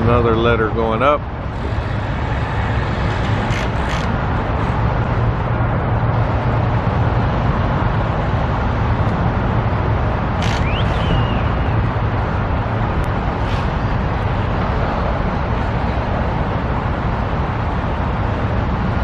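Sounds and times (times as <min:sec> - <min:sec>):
road traffic rumble: 0:00.0 - 0:19.0
short high chirp: 0:10.6 - 0:11.8.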